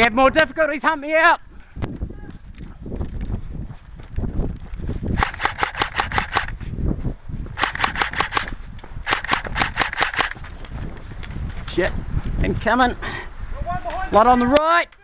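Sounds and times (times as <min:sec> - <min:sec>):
airsoft gun shots: 0:05.2 - 0:06.6, 0:07.6 - 0:10.4.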